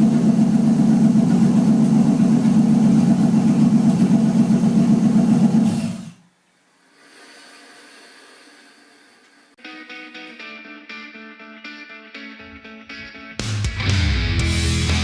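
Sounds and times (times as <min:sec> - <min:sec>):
car engine idling: 0:00.0 - 0:06.1.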